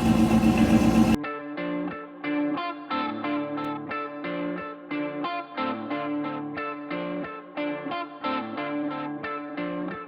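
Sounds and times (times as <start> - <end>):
car engine running: 0.0 - 1.2
electric guitar music: 0.0 - 10.0.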